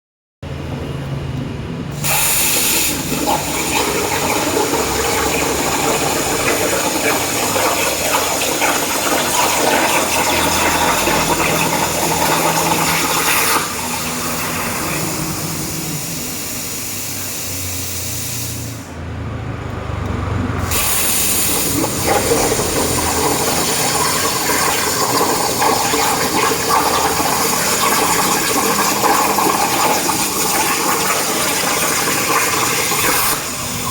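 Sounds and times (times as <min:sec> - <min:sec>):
cutting torch hissing: 0:01.9 - 0:19.0, 0:20.6 - 0:33.9.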